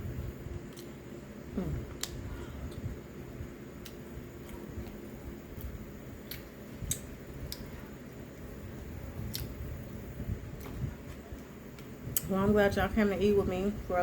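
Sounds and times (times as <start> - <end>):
lip smacks: 1.9 - 2.9, 9.2 - 9.6.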